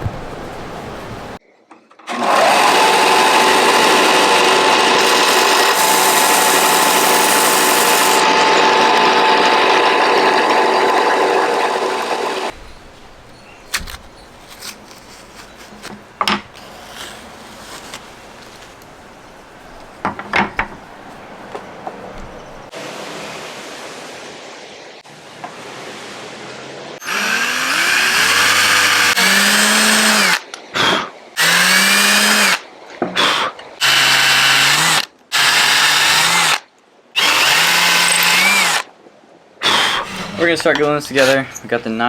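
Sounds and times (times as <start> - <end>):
electric power tool whining: 2.1 - 12.6, 27.0 - 32.6, 33.2 - 36.6, 37.2 - 38.9.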